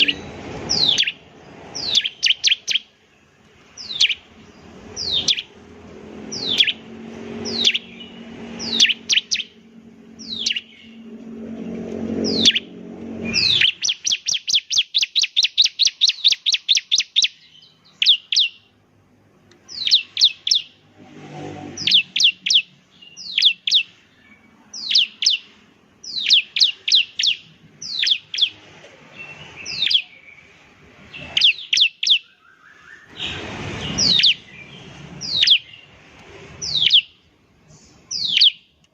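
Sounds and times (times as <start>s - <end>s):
bird chirping and trilling: 0.0s - 18.8s, 19.6s - 38.8s.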